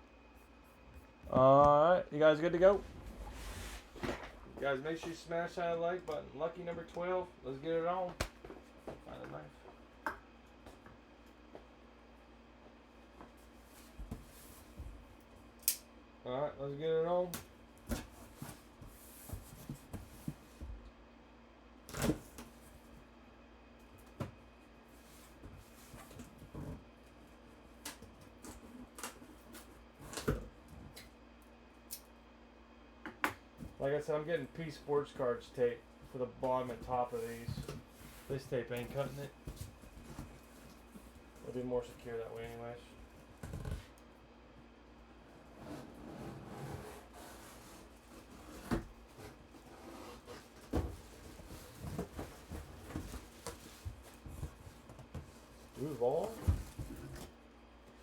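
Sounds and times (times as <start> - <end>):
cardboard box rustling and scraping: 45.4 - 57.2.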